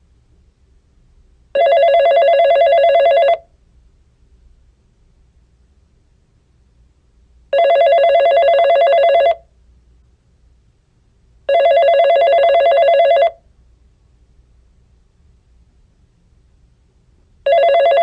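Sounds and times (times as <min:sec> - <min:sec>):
electronic telephone ringing: 0:01.6 - 0:03.4, 0:07.5 - 0:09.4, 0:11.5 - 0:13.4, 0:17.4 - 0:18.0.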